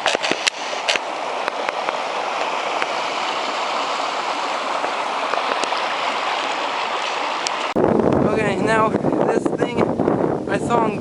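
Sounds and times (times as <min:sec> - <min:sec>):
waterfall rushing: 0:00.0 - 0:07.8.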